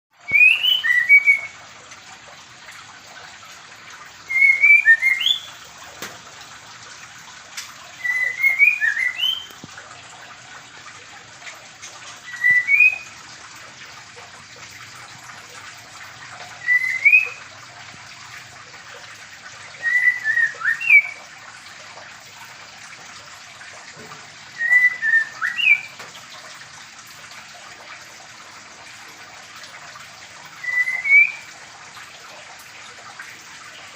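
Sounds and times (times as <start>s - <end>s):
bird whistled phrases: 0.2s - 1.6s, 4.2s - 5.6s, 8.0s - 9.6s, 12.2s - 13.2s, 16.6s - 17.4s, 19.8s - 21.2s, 24.6s - 26.0s, 30.6s - 31.5s.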